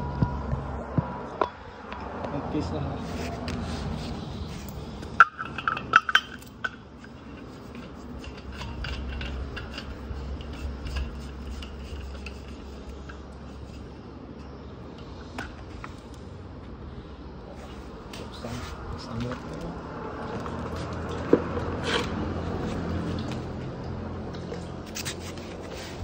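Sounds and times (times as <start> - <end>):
metal tools clinking: 4.6 - 13.2.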